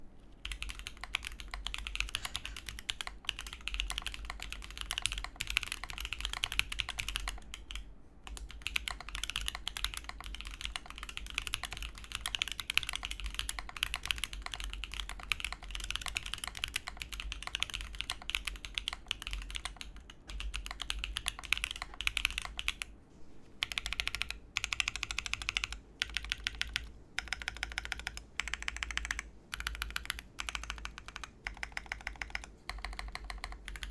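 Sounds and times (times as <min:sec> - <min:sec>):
mechanical keyboard typing: 0:00.4 - 0:22.9, 0:23.6 - 0:33.9.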